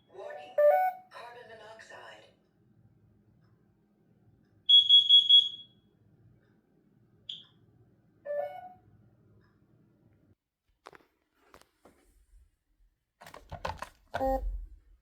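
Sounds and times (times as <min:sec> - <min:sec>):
alarm high-pitched beeps: 0:04.7 - 0:05.8.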